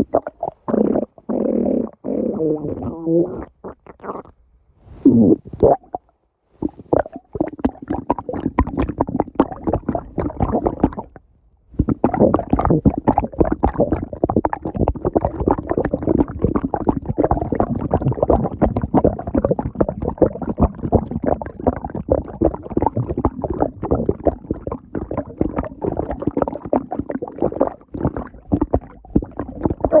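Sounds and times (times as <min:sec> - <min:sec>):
stomach growling: 0:00.0 - 0:11.2, 0:11.8 - 0:30.0.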